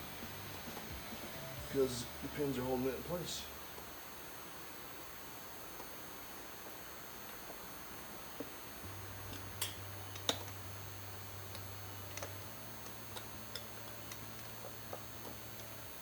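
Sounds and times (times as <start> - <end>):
faint low hum: 0.0 - 16.0.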